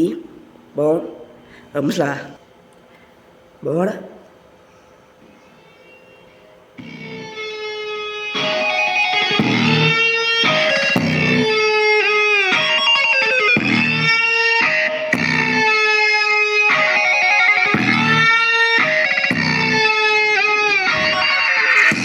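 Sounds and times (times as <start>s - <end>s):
song through cardboard speaker: 6.8s - 22.0s.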